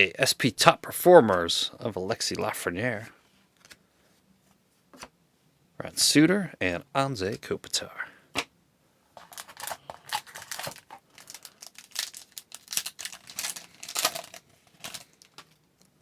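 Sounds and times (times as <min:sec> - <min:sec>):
foil wrapper tearing and crinkling: 0:09.2 - 0:15.5.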